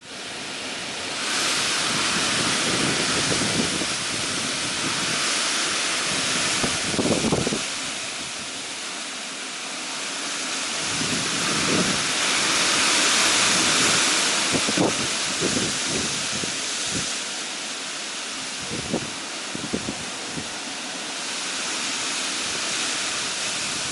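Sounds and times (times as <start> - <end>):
heavy rain hissing: 0.0 - 23.9
wind rumbling on microphone: 1.0 - 8.7, 10.7 - 17.2, 18.4 - 20.6, 21.9 - 23.9.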